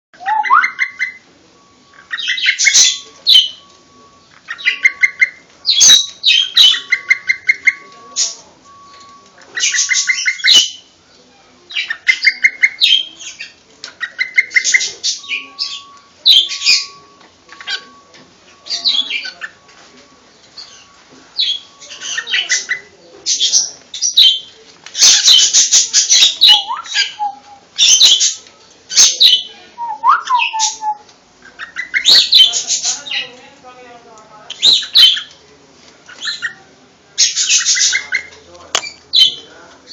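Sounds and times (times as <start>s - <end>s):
cockatiel chirping: 0.2s - 1.2s, 1.9s - 10.9s, 11.7s - 18.0s, 20.6s - 33.3s, 34.6s - 35.4s, 37.2s - 38.4s
harsh bird calls: 0.2s - 11.0s, 11.7s - 19.7s, 20.3s - 33.4s, 34.5s - 35.4s, 36.1s - 39.9s.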